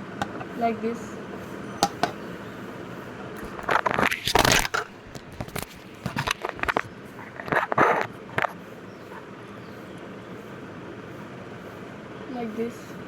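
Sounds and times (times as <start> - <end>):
plastic jar clicks and knocks: 1.8 - 2.2
plastic scraping crunching rub: 3.4 - 8.6.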